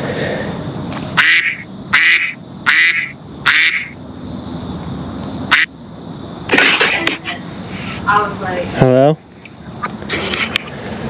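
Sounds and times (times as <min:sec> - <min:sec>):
duck quacking: 0:01.2 - 0:04.0, 0:05.5 - 0:05.7.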